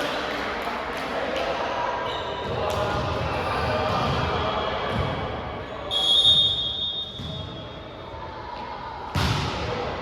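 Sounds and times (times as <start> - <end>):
referee's whistle blast: 5.9 - 7.2.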